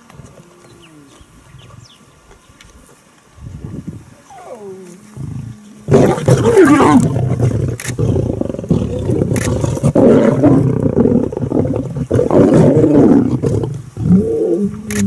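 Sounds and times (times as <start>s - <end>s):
lion growling and roaring: 4.3s - 15.0s.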